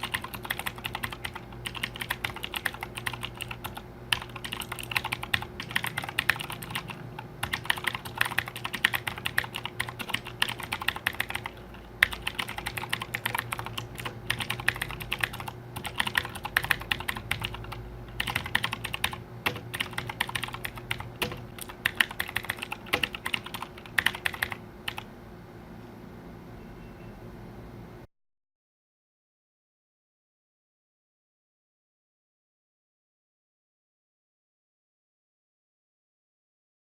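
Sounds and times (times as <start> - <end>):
keyboard key clicks: 18.2 - 25.0.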